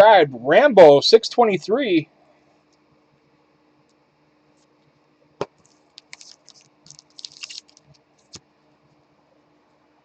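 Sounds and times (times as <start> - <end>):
crackly clicking and rustling: 5.6 - 8.4.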